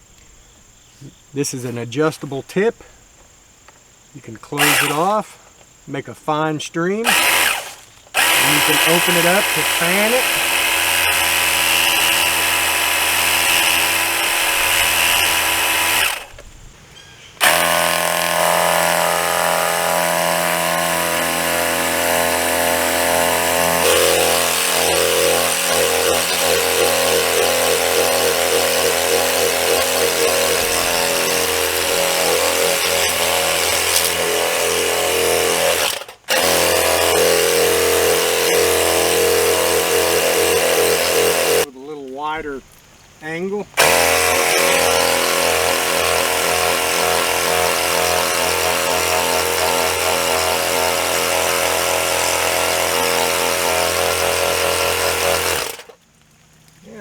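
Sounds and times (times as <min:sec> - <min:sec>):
pressure washer motor whine: 0:04.6 - 0:05.1, 0:07.0 - 0:16.4, 0:17.4 - 0:41.7, 0:43.8 - 0:55.9
water spraying: 0:07.1 - 0:16.3, 0:17.4 - 0:42.6.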